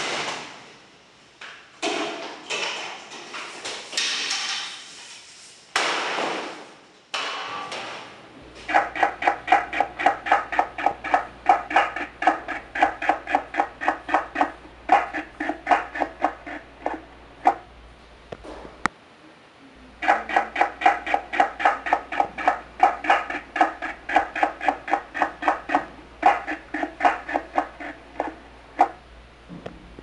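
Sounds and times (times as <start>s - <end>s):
cleaver chopping on wooden block: 8.7s - 17.6s, 20.0s - 29.0s.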